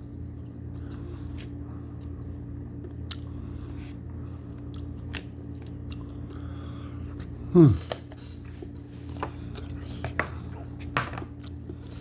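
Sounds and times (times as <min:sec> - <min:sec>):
person chewing food: 0:00.0 - 0:12.0
steady low hum: 0:00.0 - 0:12.0.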